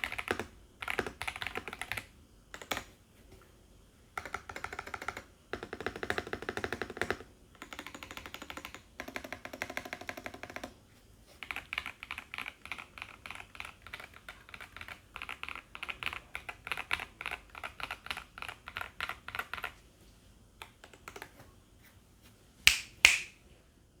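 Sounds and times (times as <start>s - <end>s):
mechanical keyboard typing: 0.0s - 2.9s, 4.2s - 10.7s, 11.4s - 19.8s.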